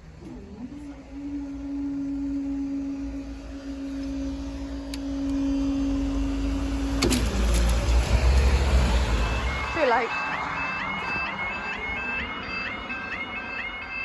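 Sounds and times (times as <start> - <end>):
steady mid-pitched hum: 0.0 - 7.4
low rumble of approaching train: 0.0 - 14.0.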